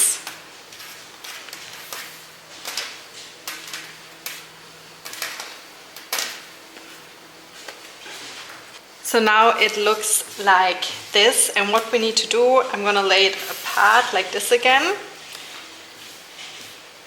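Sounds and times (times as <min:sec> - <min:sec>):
fabric rustling and swishing: 0:13.2 - 0:17.0.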